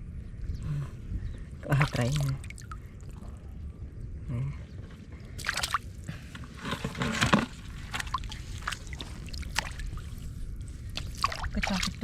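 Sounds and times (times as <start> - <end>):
hands squelching in mud and water: 1.7 - 3.2, 5.4 - 6.1, 7.3 - 12.0.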